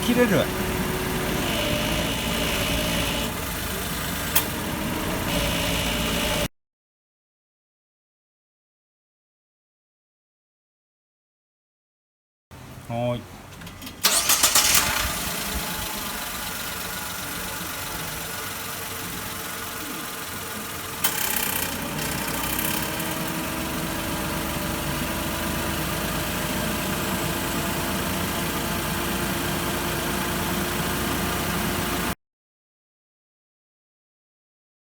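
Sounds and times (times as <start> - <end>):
ac compressor cutting in and out: 0.0 - 6.5, 13.5 - 25.0
car engine idling: 0.0 - 6.5, 13.5 - 32.2.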